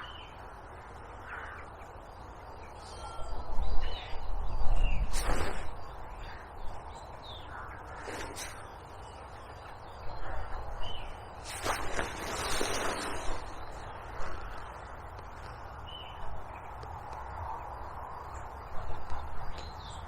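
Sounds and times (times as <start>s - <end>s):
harsh crow-like caws: 0.8s - 1.8s.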